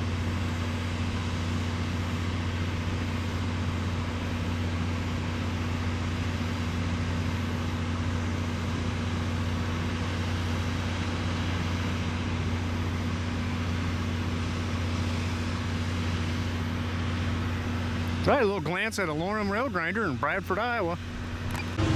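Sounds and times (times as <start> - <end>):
machine hum: 14.8 - 21.9
steady high tone: 18.3 - 21.9.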